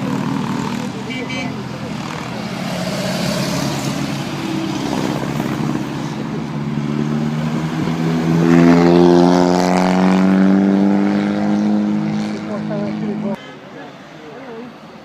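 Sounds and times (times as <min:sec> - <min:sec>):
car engine accelerating: 0:01.7 - 0:13.4.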